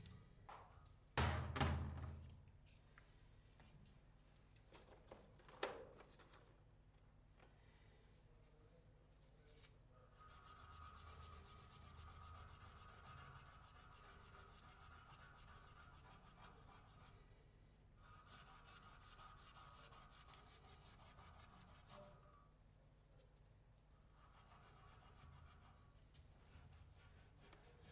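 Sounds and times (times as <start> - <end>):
tool scraping metal tube: 18.0 - 22.4.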